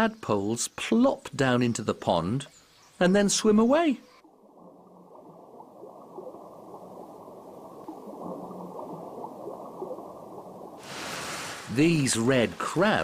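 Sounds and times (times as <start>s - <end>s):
pond water gurgling: 3.1s - 13.0s
bubble blips: 4.2s - 10.8s.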